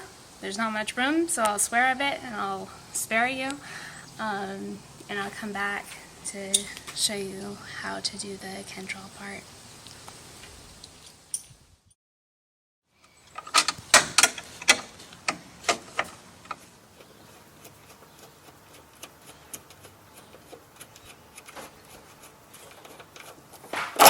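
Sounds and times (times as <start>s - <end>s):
hardware clicks and knocks: 13.3s - 16.6s.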